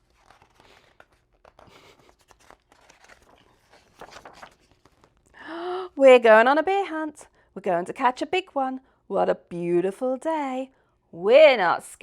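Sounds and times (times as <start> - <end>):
book pages turning: 0.0 - 5.3
paper rustling: 0.0 - 5.3.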